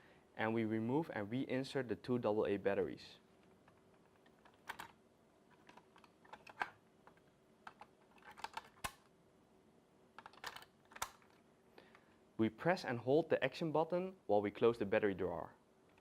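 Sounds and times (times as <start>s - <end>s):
plastic clicks of batteries: 10.2s - 11.4s.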